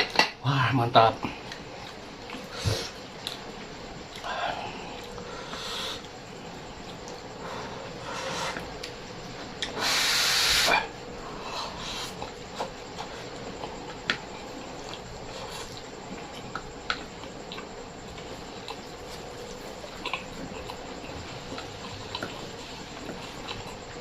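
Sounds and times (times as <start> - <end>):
loud hiss: 9.8 - 10.9
chewing mouth clicks and smacks: 12.1 - 24.0.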